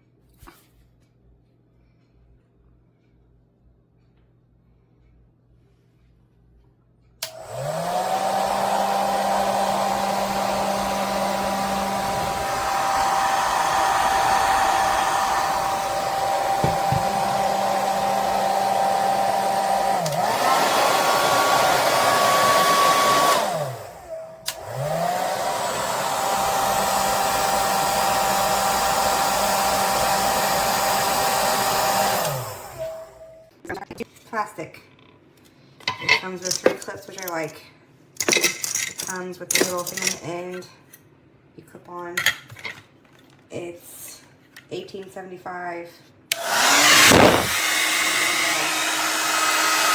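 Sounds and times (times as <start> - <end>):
hair dryer switch: 7.2 - 33.2, 46.3 - 49.9
hair dryer motor whine: 7.2 - 33.4, 46.3 - 49.9.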